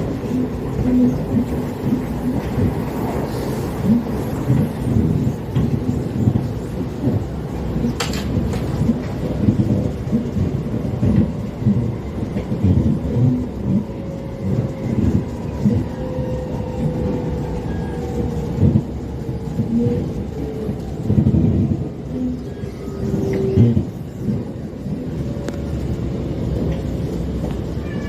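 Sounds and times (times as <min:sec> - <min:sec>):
train low rumble: 0:00.0 - 0:28.0
thuds from train wheels: 0:03.9 - 0:10.3.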